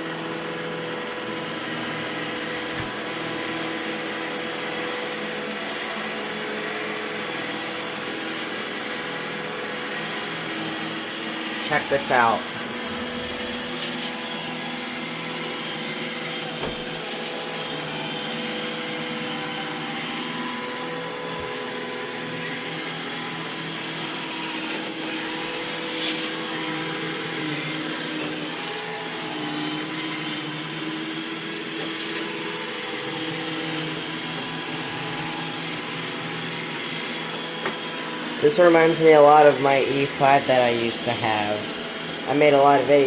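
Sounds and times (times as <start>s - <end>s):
robot vacuum motor hum and whine: 0.0s - 43.0s.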